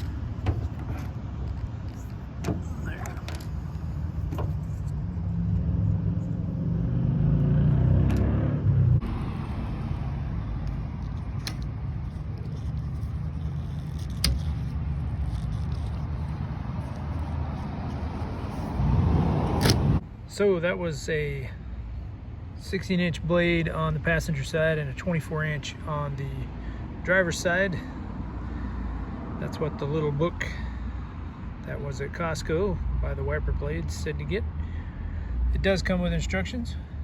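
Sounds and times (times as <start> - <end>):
road traffic rumble: 0.0 - 37.0
vehicle passing by: 2.6 - 13.6, 14.7 - 20.0.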